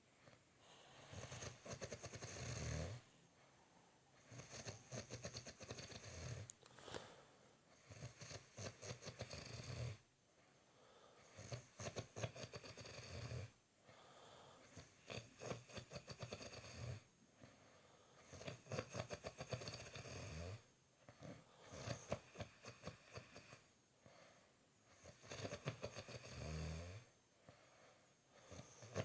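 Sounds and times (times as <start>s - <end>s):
person snoring: 0.7s - 3.1s, 4.2s - 7.2s, 7.8s - 10.0s, 18.2s - 23.7s, 24.9s - 27.1s, 28.4s - 29.0s.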